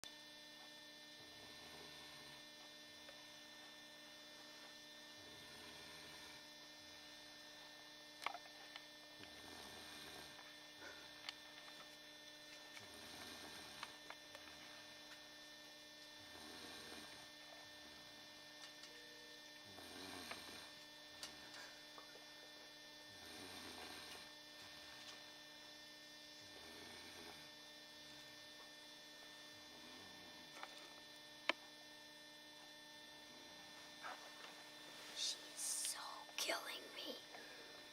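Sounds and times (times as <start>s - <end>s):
steady electrical hum: 0.1s - 37.9s
woman snoring: 1.3s - 2.4s, 5.2s - 6.4s, 9.4s - 10.4s, 12.8s - 14.0s, 16.2s - 17.3s, 19.6s - 20.8s, 23.1s - 24.3s, 26.4s - 27.5s, 35.0s - 37.9s.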